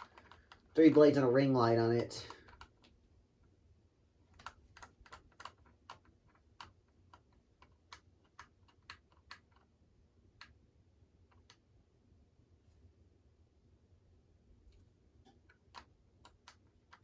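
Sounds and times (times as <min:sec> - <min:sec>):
low steady hum: 0:09.6 - 0:17.0.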